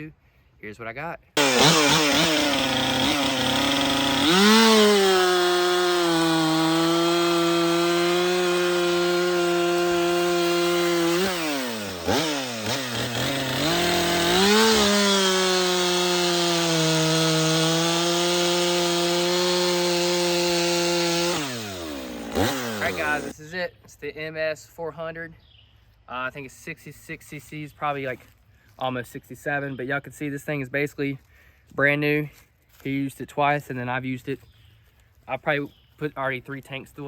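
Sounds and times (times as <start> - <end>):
chainsaw cutting wood: 1.4 - 23.3.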